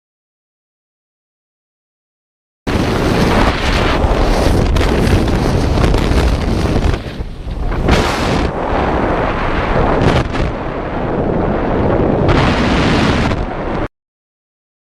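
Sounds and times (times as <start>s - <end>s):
rushing wind: 2.7s - 13.9s.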